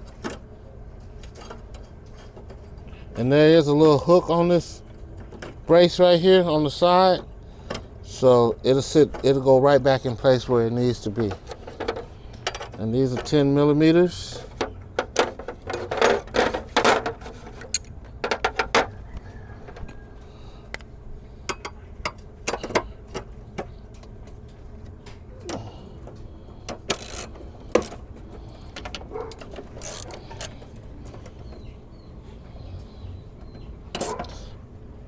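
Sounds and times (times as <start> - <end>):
ratchet clicking: 26.7 - 30.6.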